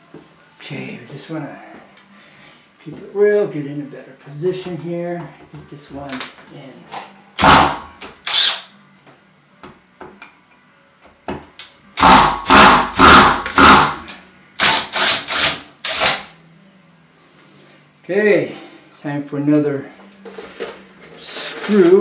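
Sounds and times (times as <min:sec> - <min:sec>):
power drill driving a screw: 0:07.4 - 0:08.7, 0:14.6 - 0:16.3.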